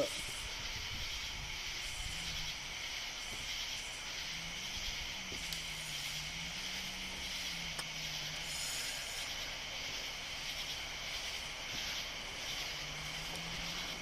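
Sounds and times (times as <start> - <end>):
crickets and insects buzzing: 0.0 - 14.0
low steady hum: 0.0 - 14.0.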